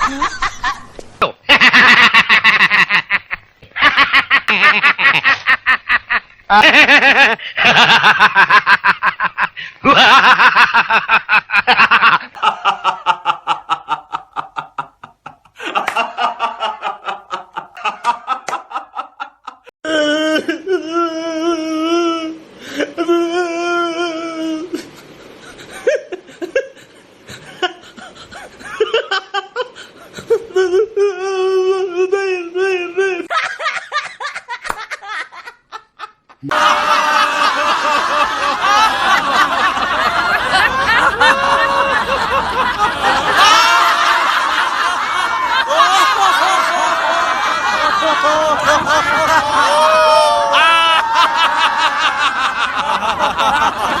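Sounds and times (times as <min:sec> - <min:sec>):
people laughing rapidly: 0:01.5 - 0:19.7, 0:33.2 - 0:54.0
drawn-out wavering voice: 0:19.8 - 0:24.8, 0:30.4 - 0:33.3.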